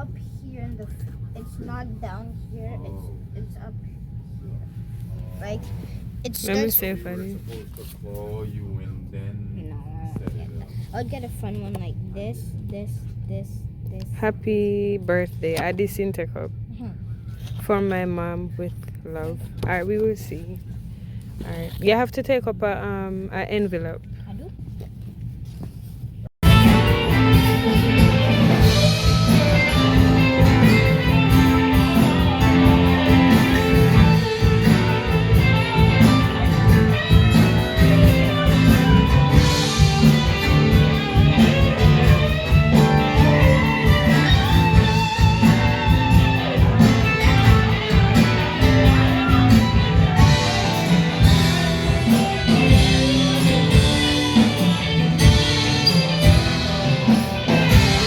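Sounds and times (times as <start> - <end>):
guitar music with steady beat: 26.4 - 58.0.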